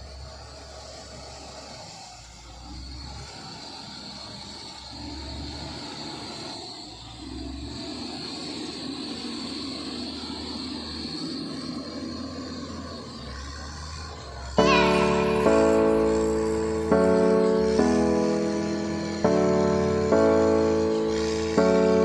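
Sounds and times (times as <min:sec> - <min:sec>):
diesel engine running under load: 0:00.0 - 0:22.0
high whine: 0:14.5 - 0:22.0.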